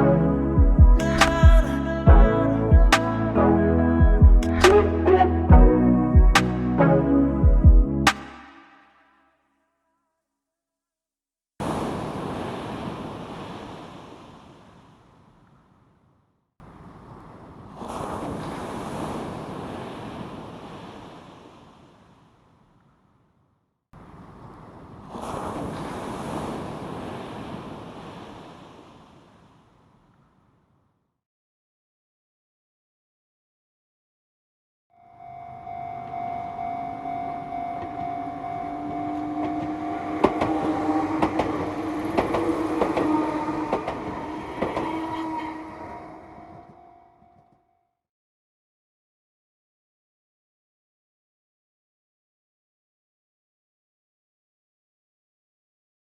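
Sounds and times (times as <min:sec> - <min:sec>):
sea waves breaking on shore: 0:11.6 - 0:16.0, 0:16.6 - 0:23.0, 0:24.0 - 0:30.7, 0:35.2 - 0:47.0.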